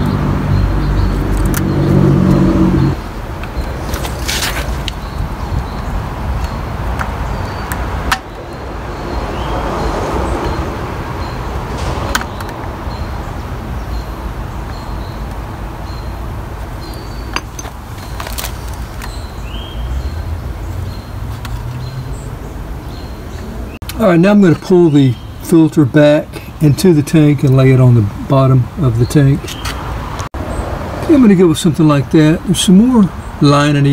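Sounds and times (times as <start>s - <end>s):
hand tools clicking and tapping: 6.4s - 8.3s, 17.3s - 19.2s.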